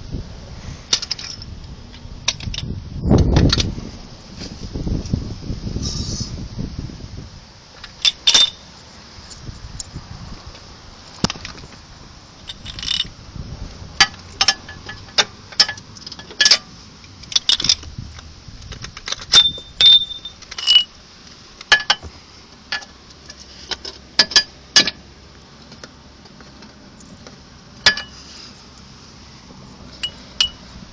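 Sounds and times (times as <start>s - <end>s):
metallic suspension clicks and clinks: 0.9s - 2.7s, 7.8s - 8.7s, 12.4s - 13.1s, 14.0s - 17.9s, 18.6s - 21.0s, 21.6s - 22.1s, 22.7s - 25.0s, 25.6s - 28.2s, 29.9s - 30.8s.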